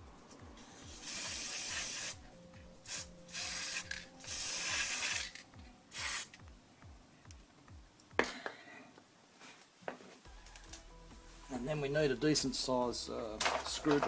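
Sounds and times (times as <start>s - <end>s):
aerosol spray hissing: 0.6s - 6.4s.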